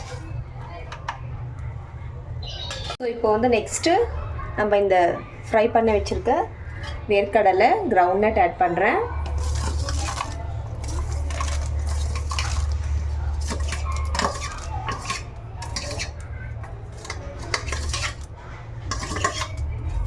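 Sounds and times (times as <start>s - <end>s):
spoon scraping a metal pan: 9.2s - 19.8s.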